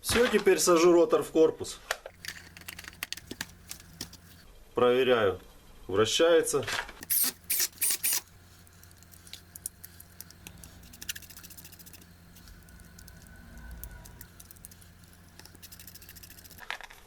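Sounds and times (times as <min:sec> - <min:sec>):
small gear clicks: 0:02.1 - 0:04.4, 0:07.0 - 0:16.6.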